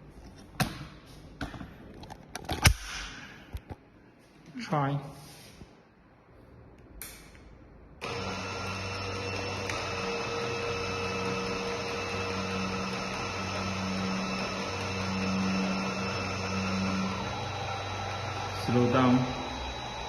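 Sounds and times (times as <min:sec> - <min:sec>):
electric gate motor humming: 0:08.0 - 0:20.0.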